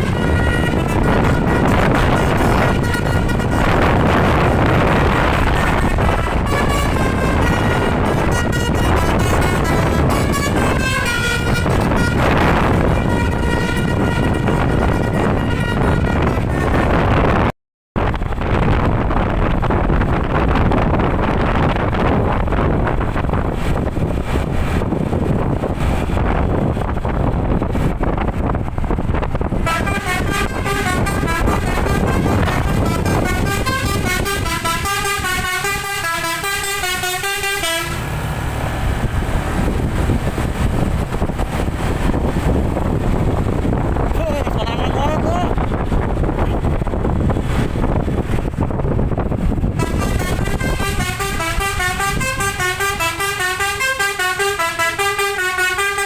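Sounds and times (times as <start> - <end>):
bus horn playing a tune: 0.0 - 17.4, 29.5 - 38.1, 49.7 - 56.0
road and vehicle noise: 0.0 - 56.0.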